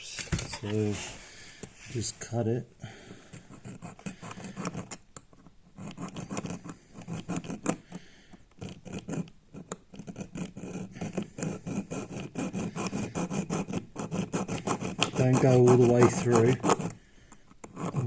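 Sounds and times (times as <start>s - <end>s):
hacksaw sawing metal: 11.1s - 16.9s.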